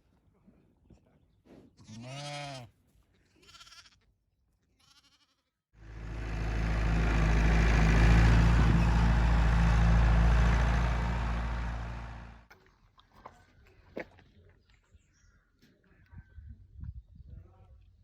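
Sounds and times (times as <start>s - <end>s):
sheep bleating: 1.8s - 2.7s, 3.3s - 4.0s, 4.8s - 5.5s
vehicle engine running: 5.8s - 12.4s.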